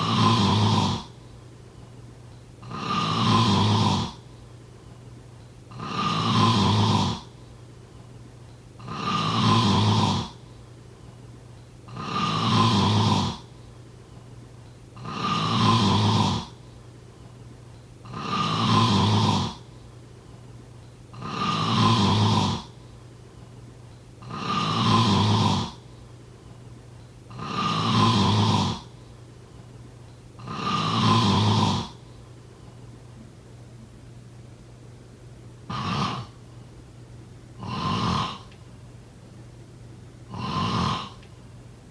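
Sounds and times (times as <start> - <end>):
person snoring: 0.0 - 1.2, 2.6 - 4.2, 5.7 - 7.3, 8.8 - 10.4, 11.9 - 13.5, 15.0 - 16.6, 18.0 - 19.7, 21.1 - 22.8, 24.2 - 25.8, 27.3 - 28.9, 30.4 - 32.0, 35.7 - 36.4, 37.6 - 38.6, 40.3 - 41.3
quiet breaths: 0.0 - 34.1, 35.6 - 39.0, 40.2 - 41.9.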